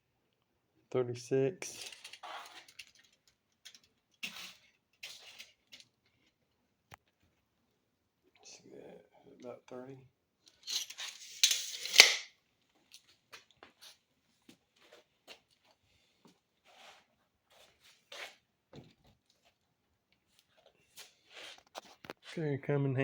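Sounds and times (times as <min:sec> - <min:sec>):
handling clicks and rustles: 0:01.7 - 0:07.4
tape measure retracting with snap: 0:10.6 - 0:12.3.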